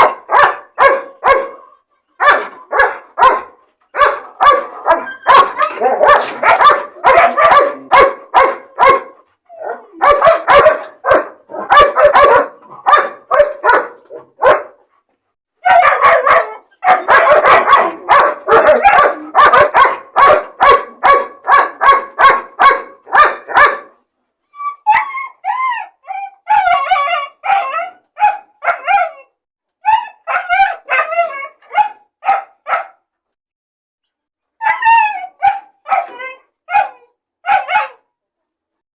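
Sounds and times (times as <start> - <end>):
dog high yaps: 0.0 - 14.8, 15.6 - 23.9, 34.6 - 38.0
dogs barking: 0.0 - 14.8, 15.6 - 24.0, 26.5 - 29.2, 30.2 - 33.0, 35.4 - 38.0.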